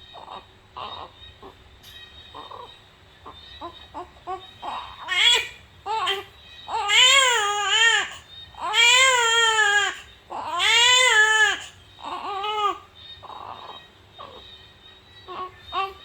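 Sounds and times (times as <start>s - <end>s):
infant wailing: 3.6s - 14.4s
infant whimpering: 3.6s - 14.4s.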